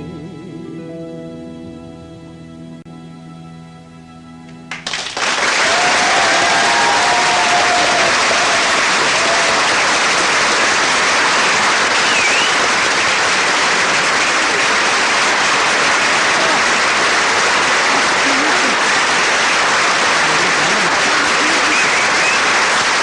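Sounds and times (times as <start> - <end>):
audience applause: 4.7 - 23.0.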